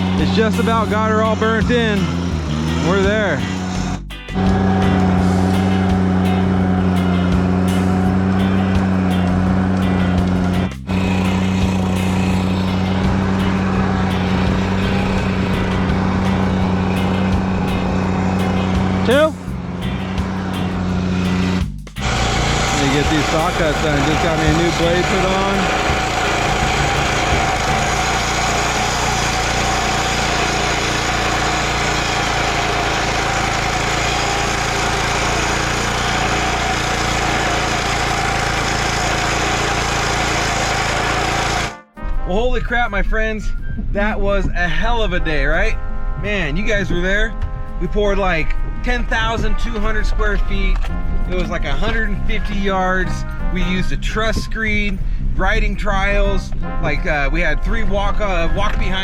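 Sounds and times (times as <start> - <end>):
concrete saw cutting: 0.0 - 41.8
gasoline engine running steadily: 0.0 - 41.8.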